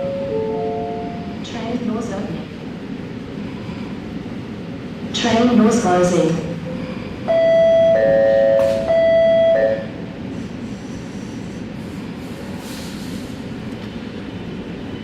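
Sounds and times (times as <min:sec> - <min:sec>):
train rumbling at platform: 0:00.0 - 0:15.0
two-tone door warning chime: 0:07.3 - 0:10.0.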